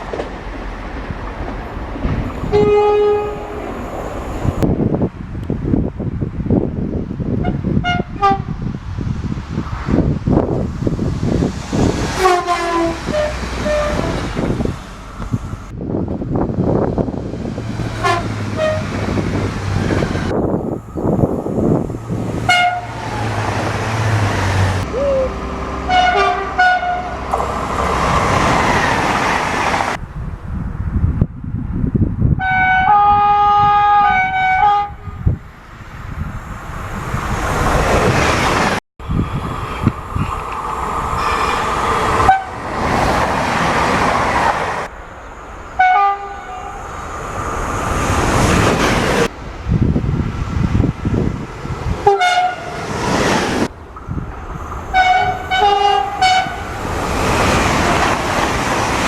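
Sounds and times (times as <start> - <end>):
passing trains rumbling: 0.0 - 59.0
train horn toots: 2.4 - 3.7, 7.4 - 8.6, 12.2 - 14.3, 18.0 - 19.0, 22.4 - 23.3, 24.8 - 29.1, 32.4 - 35.3, 41.2 - 42.7, 45.8 - 46.8, 52.0 - 52.8, 54.9 - 56.7
long train horn chord: 2.5 - 3.6, 12.2 - 14.2, 18.0 - 18.8, 22.5 - 23.0, 24.8 - 28.4, 32.4 - 35.2, 52.0 - 52.8, 55.0 - 56.6.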